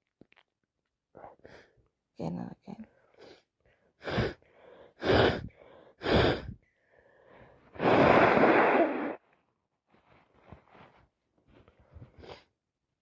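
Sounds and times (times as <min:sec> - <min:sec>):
person sneezing: 0:07.8 - 0:09.2.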